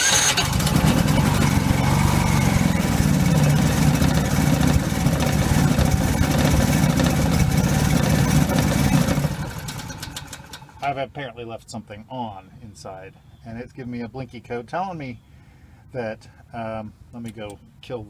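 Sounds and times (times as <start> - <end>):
generator starting and running: 0.0 - 11.0.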